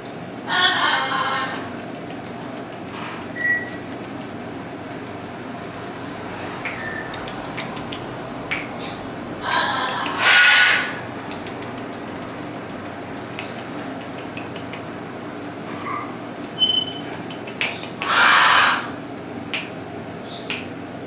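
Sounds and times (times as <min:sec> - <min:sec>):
parrot squawking: 0:00.5 - 0:01.6, 0:08.8 - 0:11.6, 0:17.7 - 0:19.0
parrot chirps and clicks: 0:01.2 - 0:04.4, 0:06.6 - 0:15.1, 0:16.4 - 0:18.8, 0:19.5 - 0:20.8.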